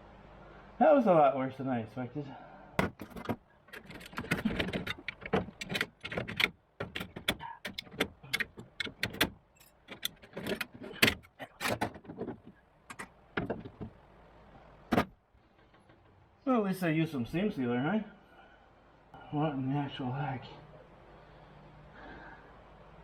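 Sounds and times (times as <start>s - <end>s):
metallic clinks and knocks: 2.8s - 13.9s
loose metal being handled: 2.8s - 14.0s.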